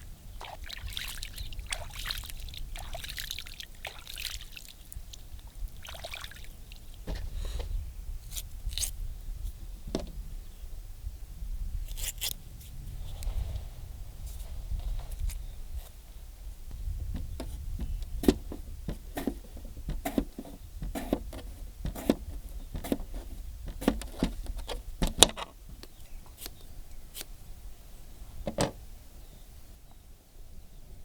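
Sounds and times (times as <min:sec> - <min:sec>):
steady low rumble: 0:07.0 - 0:25.0.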